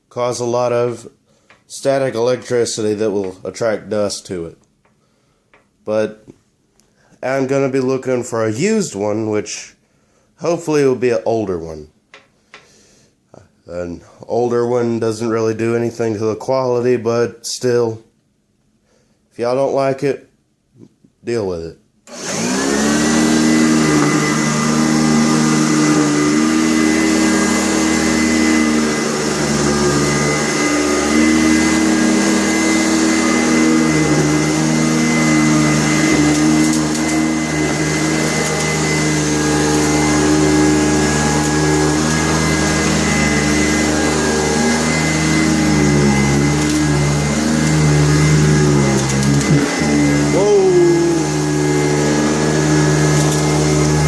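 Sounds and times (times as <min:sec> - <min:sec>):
upright vacuum cleaner running: 0:22.1 - 0:54.0.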